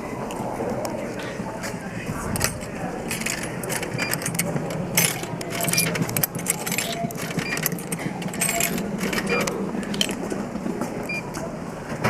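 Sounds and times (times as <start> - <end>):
coins clinking into coin slot: 2.4 - 10.3.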